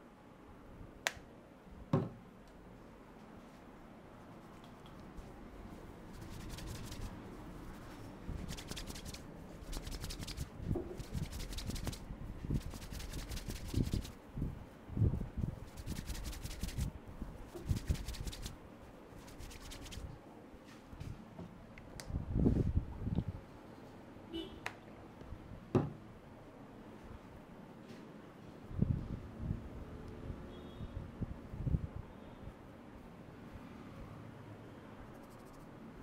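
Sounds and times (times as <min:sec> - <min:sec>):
hands rubbing through hair: 0:04.3 - 0:14.2, 0:15.5 - 0:16.9, 0:17.5 - 0:18.6, 0:19.2 - 0:20.1, 0:35.2 - 0:35.7.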